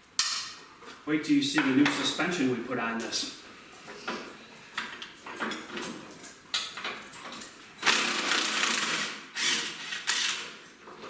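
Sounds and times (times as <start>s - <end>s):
power tool running: 7.8s - 10.4s.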